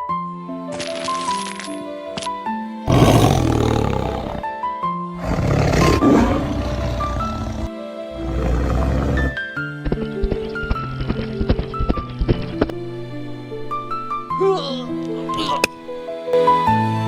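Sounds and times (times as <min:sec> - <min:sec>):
background music: 0:00.0 - 0:17.0
tiger roaring: 0:02.9 - 0:04.5, 0:05.2 - 0:11.7.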